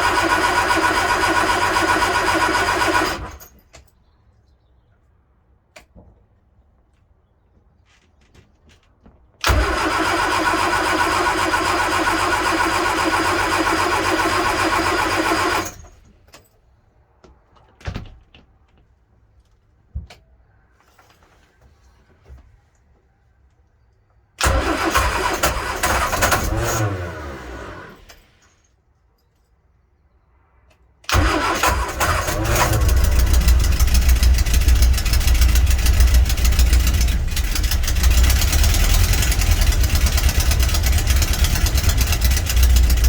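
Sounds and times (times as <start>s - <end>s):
engine starter motor cranking: 0.0s - 3.6s, 9.4s - 16.0s, 24.4s - 28.5s, 31.1s - 43.0s.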